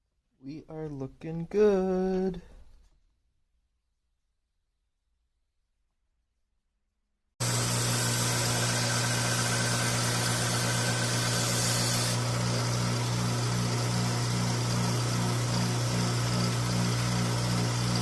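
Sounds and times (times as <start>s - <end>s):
grinding hiss on metal blade: 7.4s - 12.2s
belt grinder motor hum: 7.4s - 18.0s.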